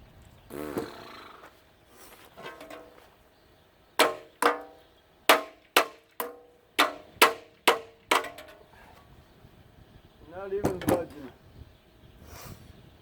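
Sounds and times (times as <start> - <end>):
hammer striking metal: 4.0 - 8.4.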